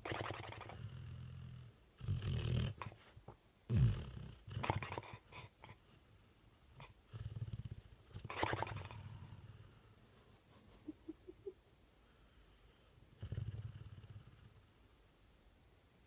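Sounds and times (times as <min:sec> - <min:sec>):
dog snoring: 0:00.0 - 0:03.0, 0:03.7 - 0:05.8, 0:06.8 - 0:09.8, 0:13.1 - 0:14.7.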